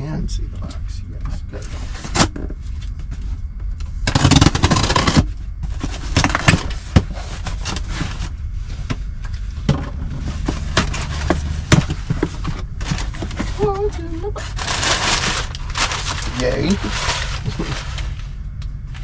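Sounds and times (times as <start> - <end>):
low steady hum: 0.0 - 19.0
cardboard box scraping: 4.1 - 8.4, 9.9 - 18.3.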